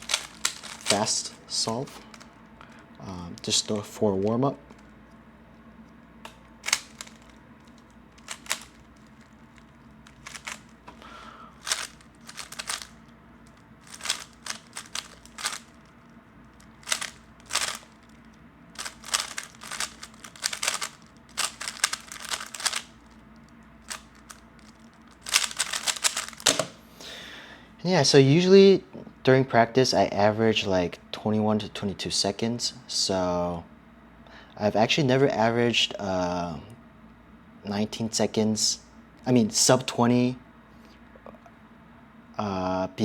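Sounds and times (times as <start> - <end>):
puzzle cube clicking rapidly: 0.0 - 1.4, 6.6 - 10.7, 11.6 - 15.9, 16.6 - 18.2, 18.8 - 23.0, 23.8 - 26.6.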